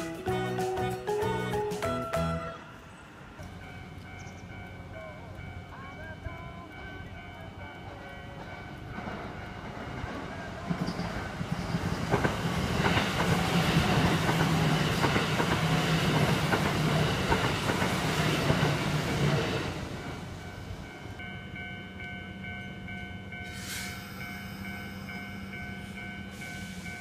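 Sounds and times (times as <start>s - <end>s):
level-crossing bell ringing: 0.0s - 9.8s, 20.4s - 27.0s
train passing: 0.0s - 27.0s.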